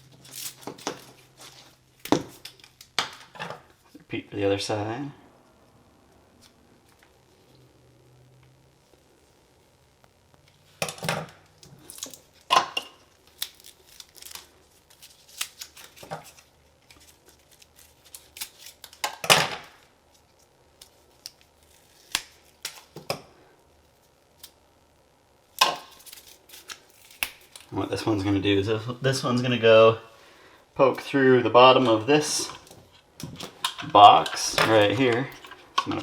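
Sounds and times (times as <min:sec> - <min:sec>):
plastic sheath tearing: 0:13.2 - 0:19.0.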